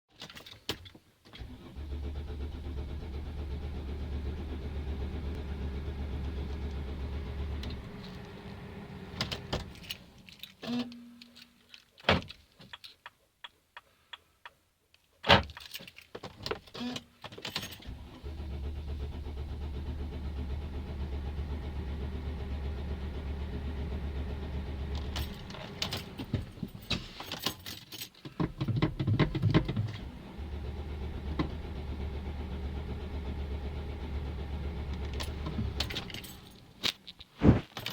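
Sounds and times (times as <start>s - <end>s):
diesel engine cranking on starter: 1.4s - 10.5s, 17.8s - 26.8s, 29.2s - 36.9s.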